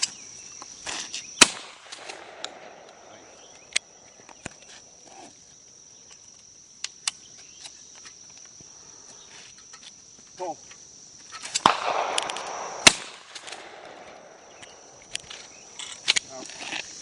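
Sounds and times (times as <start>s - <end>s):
high insect buzz: 0.0s - 17.0s
shotgun shot with echo: 1.4s - 3.5s, 11.6s - 14.9s.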